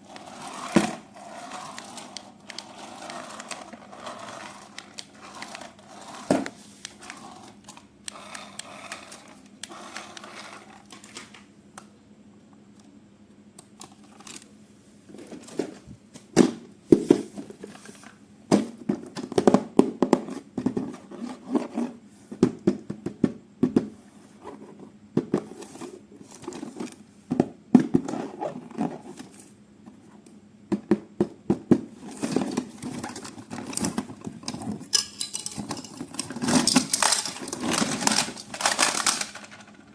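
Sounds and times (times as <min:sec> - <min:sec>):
packaging crinkling and rustling: 0:32.0 - 0:39.7
handling clicks and knocks: 0:32.4 - 0:39.9.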